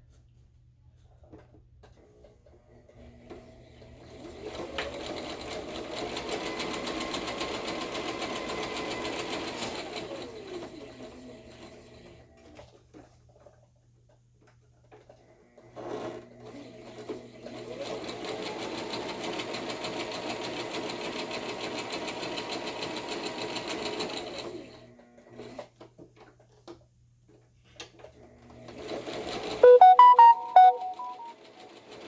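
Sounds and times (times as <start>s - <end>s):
phone ringtone: 29.6s - 31.3s.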